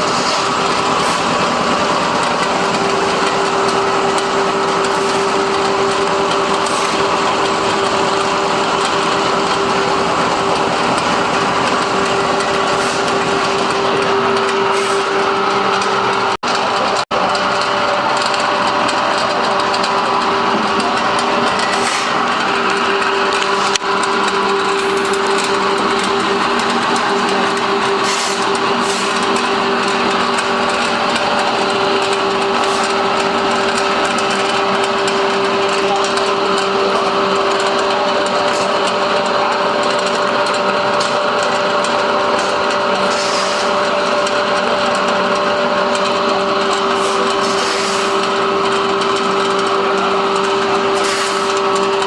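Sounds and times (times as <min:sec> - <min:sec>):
pellet mill grinding and rattling: 0:00.0 - 0:52.0.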